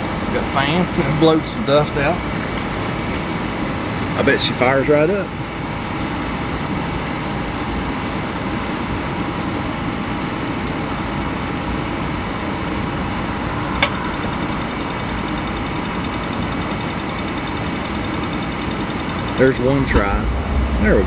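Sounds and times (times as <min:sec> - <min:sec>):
fast faint ticking: 0:13.8 - 0:19.9
sharp click: 0:13.8 - 0:20.0
furnace blower running: 0:13.8 - 0:20.2.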